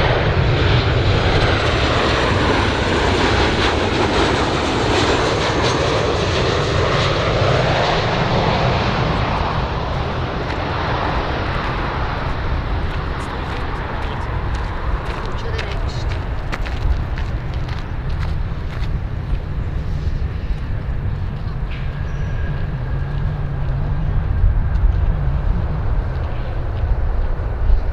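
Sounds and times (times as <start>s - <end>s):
airplane engines roaring: 0.0s - 27.9s
faint high whine: 19.8s - 24.4s.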